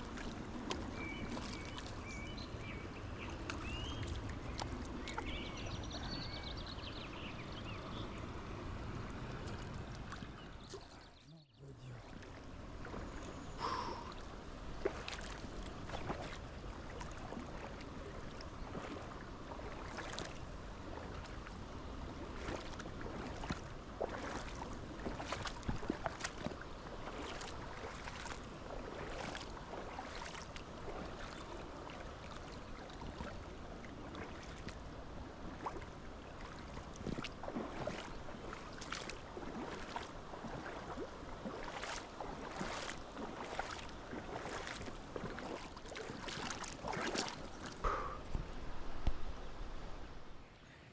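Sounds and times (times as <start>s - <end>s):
stream water rushing: 0.0s - 11.0s, 11.6s - 50.6s
small water splashes: 0.0s - 49.6s.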